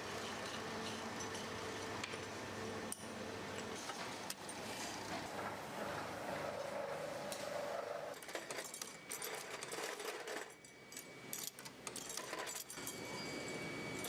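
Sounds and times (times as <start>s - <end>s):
small metal parts clinking: 8.2s - 13.1s.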